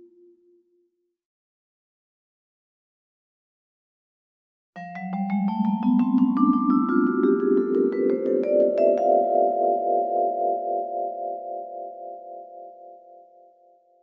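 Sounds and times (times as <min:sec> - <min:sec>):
vibraphone rising run: 0:04.8 - 0:10.3.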